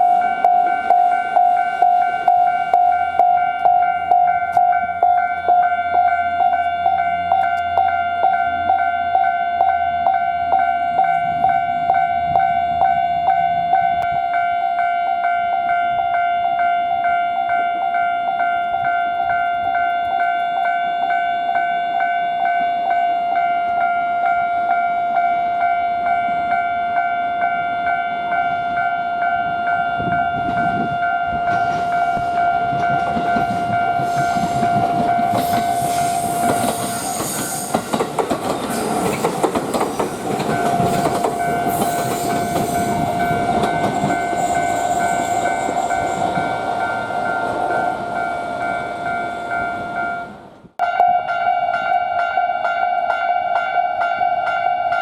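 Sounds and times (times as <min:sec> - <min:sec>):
train rumble and wheel clatter: 0:00.0 - 0:14.5, 0:24.7 - 0:50.8
level-crossing alarm ringing: 0:00.0 - 0:55.0.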